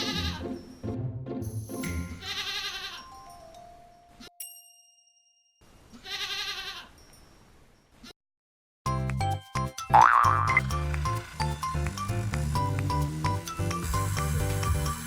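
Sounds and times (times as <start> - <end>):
goat bleating: 0.0 - 0.4, 2.2 - 3.1, 6.0 - 6.9.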